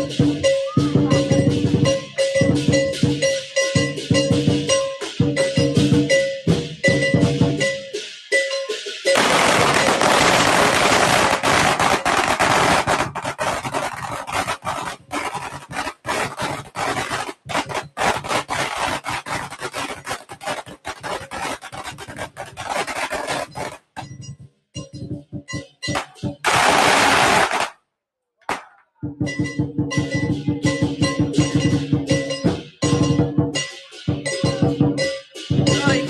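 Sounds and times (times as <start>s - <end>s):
lion dance drums and cymbals: 0.0s - 27.7s, 29.0s - 36.0s
firecrackers crackling: 8.9s - 24.2s, 25.6s - 27.8s, 28.4s - 28.9s.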